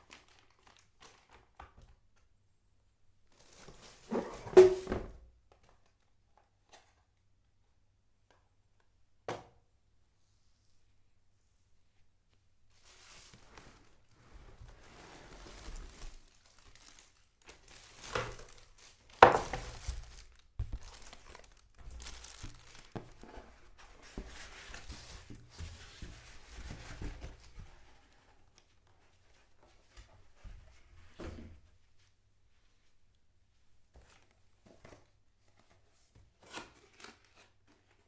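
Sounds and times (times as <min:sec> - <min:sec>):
packaging crinkling and tearing: 0:00.0 - 0:01.6, 0:15.3 - 0:23.2.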